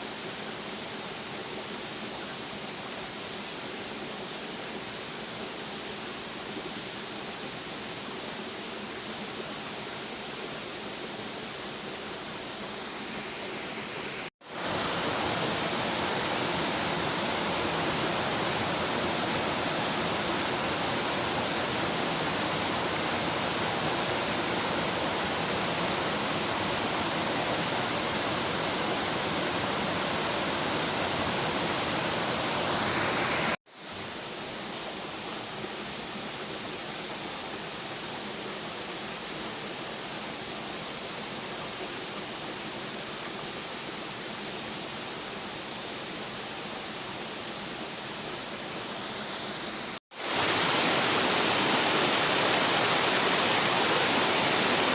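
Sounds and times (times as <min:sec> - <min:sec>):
waterfall rushing: 0:12.9 - 0:34.1, 0:47.8 - 0:54.9.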